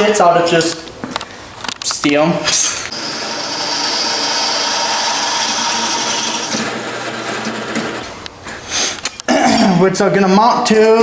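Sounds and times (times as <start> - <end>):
power tool on steel: 2.5 - 8.1.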